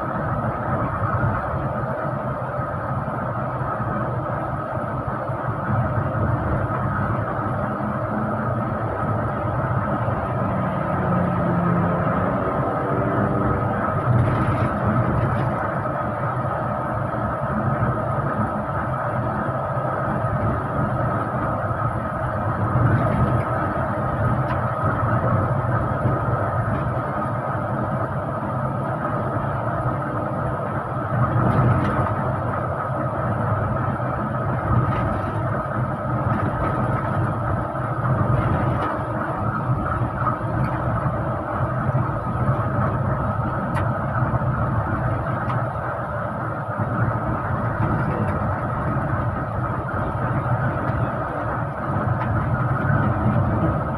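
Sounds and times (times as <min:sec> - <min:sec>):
bus engine and road noise: 0:00.0 - 0:53.9.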